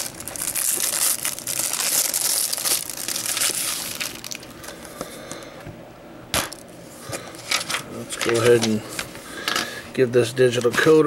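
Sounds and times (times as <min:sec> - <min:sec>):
plastic wrap crinkling: 0:00.0 - 0:04.8.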